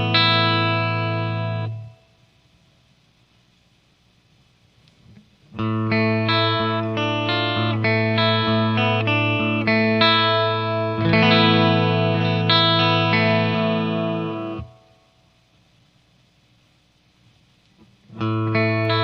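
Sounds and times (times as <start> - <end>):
electric guitar with chorus effect: 0.0 - 2.1, 5.0 - 15.2, 17.6 - 19.0.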